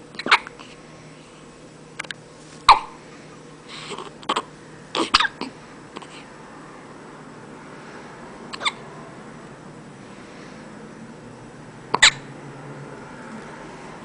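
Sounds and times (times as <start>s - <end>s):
baby hiccuping: 0.2s - 0.5s, 2.7s - 3.0s, 3.9s - 6.1s, 8.5s - 8.8s, 11.9s - 12.3s.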